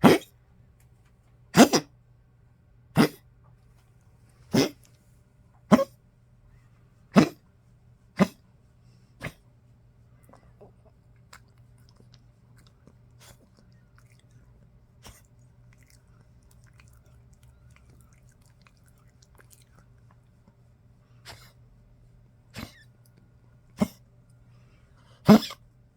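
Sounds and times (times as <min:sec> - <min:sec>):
low steady hum: 0:00.0 - 0:25.9
dog licking and smacking lips: 0:10.3 - 0:20.6.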